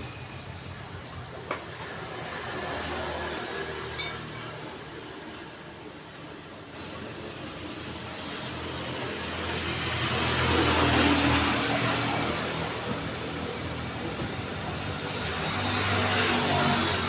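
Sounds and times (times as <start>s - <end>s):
steady traffic noise: 0.0s - 17.0s
car passing by: 14.4s - 17.0s.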